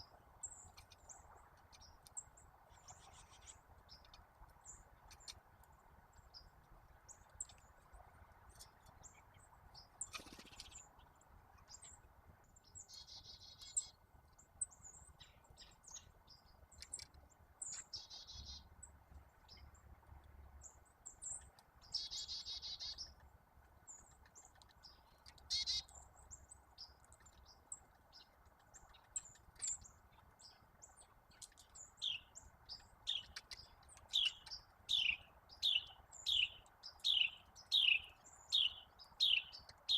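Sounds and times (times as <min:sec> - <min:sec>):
songbirds chirping: 0:00.0 - 0:39.9
bird trills: 0:25.5 - 0:25.9, 0:33.1 - 0:39.9.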